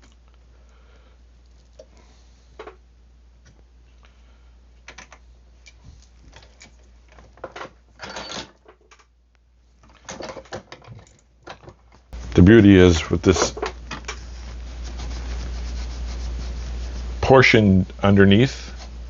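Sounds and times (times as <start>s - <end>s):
scraping and rustling: 9.8s - 17.3s.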